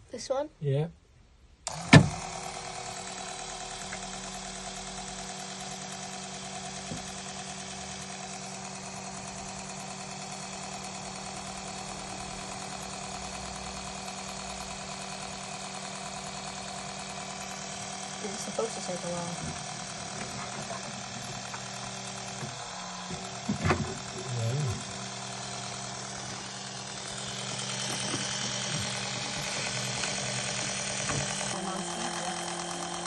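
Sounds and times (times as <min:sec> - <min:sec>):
electric oil pump humming: 0:01.6 - 0:33.0.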